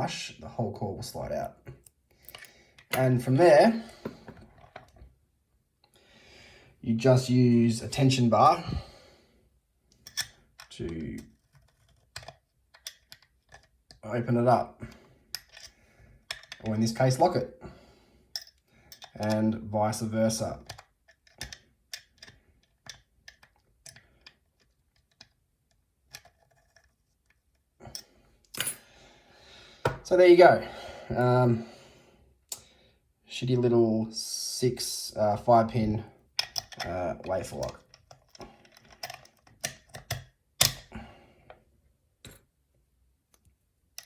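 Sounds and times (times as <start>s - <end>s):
lock clicking metallically: 36.4s - 40.9s.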